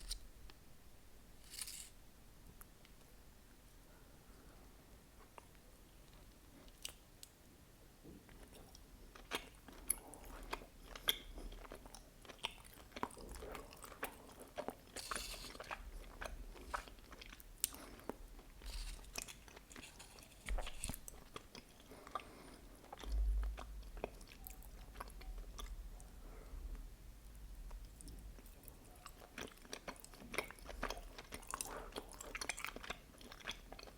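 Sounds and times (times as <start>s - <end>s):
chewing with wet mouth clicks: 8.3s - 26.1s, 27.6s - 33.9s.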